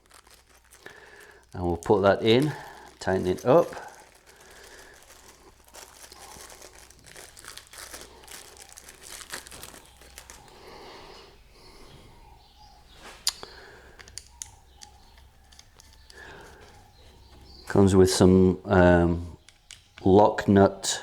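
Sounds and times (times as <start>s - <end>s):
hands rustling small parts: 0.0s - 20.1s
light clicks of parts: 13.1s - 18.2s, 19.2s - 20.1s.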